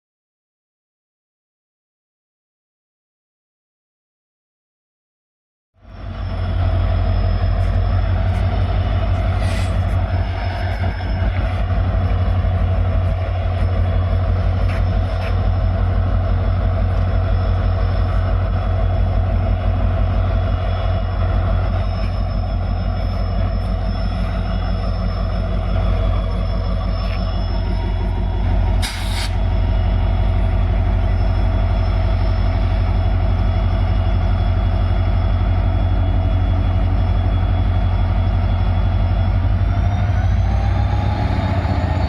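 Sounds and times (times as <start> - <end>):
locomotive engine idling: 5.8 - 41.8.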